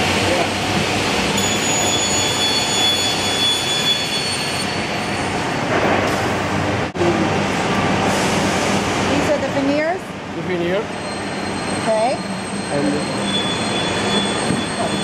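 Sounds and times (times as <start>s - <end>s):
thin high whines: 1.3s - 5.6s, 10.8s - 15.0s.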